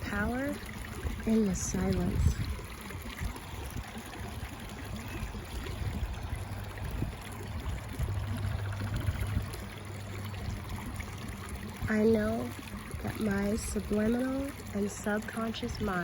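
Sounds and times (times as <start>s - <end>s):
vehicle engine hum: 3.4s - 16.0s.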